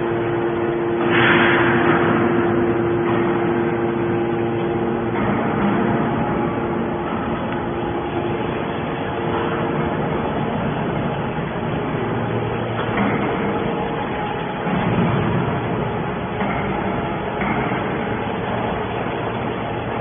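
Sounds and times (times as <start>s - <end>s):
heavy baling machinery running: 0.0s - 20.0s
machine humming tones: 0.0s - 20.0s.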